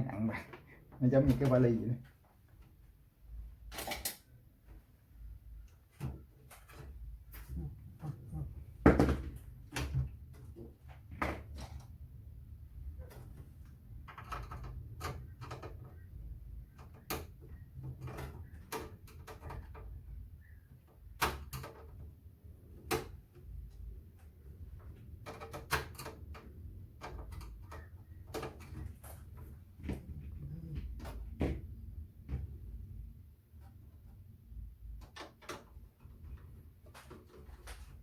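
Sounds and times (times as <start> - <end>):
computer case clicks and knocks: 8.8 - 12.0.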